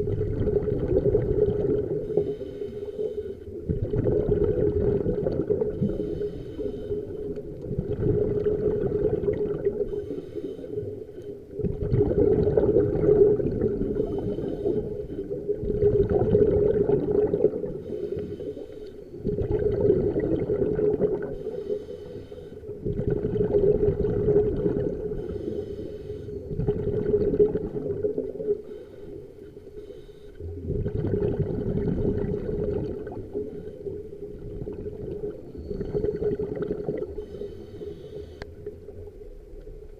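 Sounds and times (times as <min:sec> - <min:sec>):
gurgling bubbles: 0:00.0 - 0:18.5, 0:19.1 - 0:22.0, 0:22.6 - 0:37.8
diver breathing through regulator: 0:01.7 - 0:03.7, 0:05.7 - 0:07.6, 0:09.3 - 0:11.4, 0:13.4 - 0:15.6, 0:17.4 - 0:19.2, 0:21.2 - 0:22.9, 0:25.0 - 0:27.2, 0:28.4 - 0:31.2, 0:37.0 - 0:38.7.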